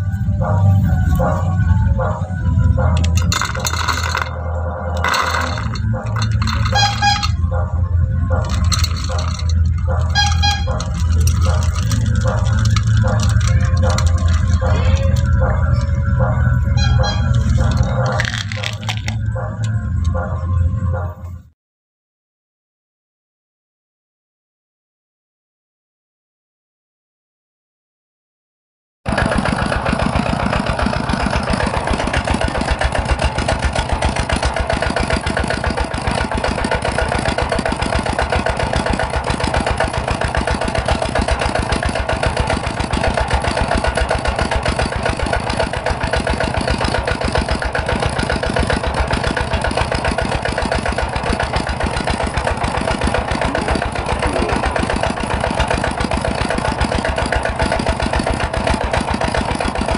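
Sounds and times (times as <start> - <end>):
machine rattling: 2.7 - 20.5, 29.1 - 59.9.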